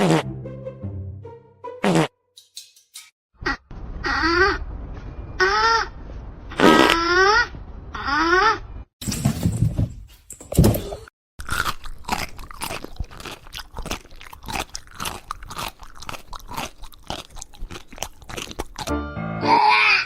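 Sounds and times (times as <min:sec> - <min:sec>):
pet chewing crunchy food: 0:11.4 - 0:18.9.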